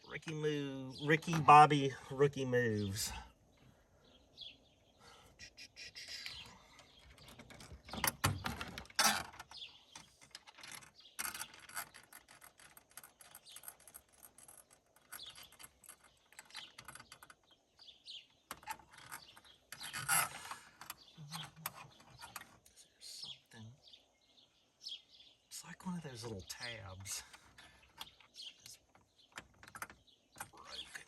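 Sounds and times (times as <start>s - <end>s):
faint bird chirps: 0.0s - 8.6s, 9.5s - 31.0s
metal fittings and tools rattling: 6.8s - 17.4s, 18.5s - 21.0s.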